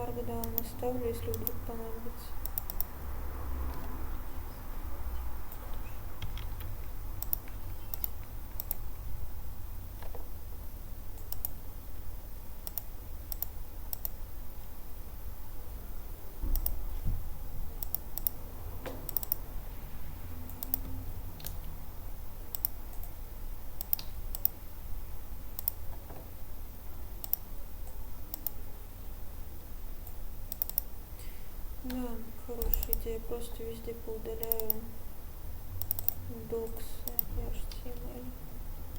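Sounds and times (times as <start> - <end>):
low steady hum: 0.0 - 38.9
computer keyboard and mouse clicking: 0.4 - 1.6, 2.4 - 2.9, 5.5 - 8.9, 11.2 - 11.6, 12.6 - 14.2, 16.5 - 16.8, 17.8 - 19.4, 20.4 - 21.7, 22.5 - 23.2, 23.8 - 24.6, 25.5 - 26.2, 27.2 - 28.6, 30.0 - 30.9, 32.6 - 33.1, 34.4 - 34.8, 35.8 - 38.0.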